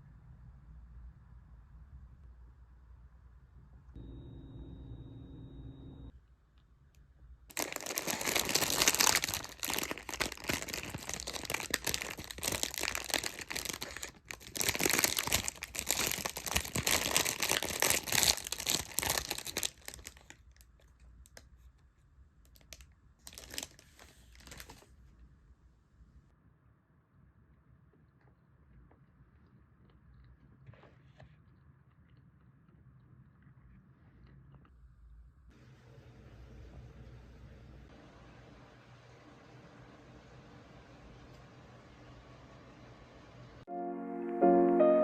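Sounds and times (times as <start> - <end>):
crinkling and rustling: 7.5 - 25.3.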